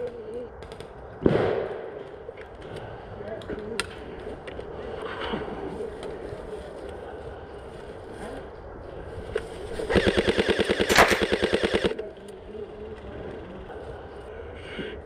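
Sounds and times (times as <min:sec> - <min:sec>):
airsoft rifle full-auto burst: 0:09.8 - 0:12.0.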